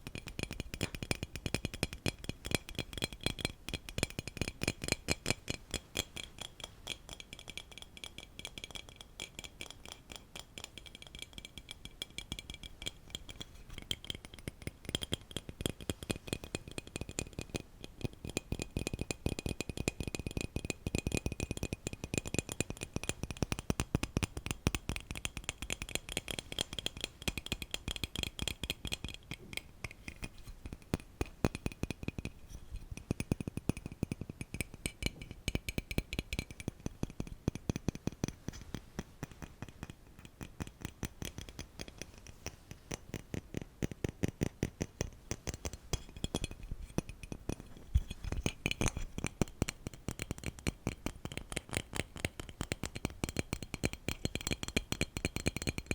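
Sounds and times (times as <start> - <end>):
rapid light tapping: 0.0 - 55.9.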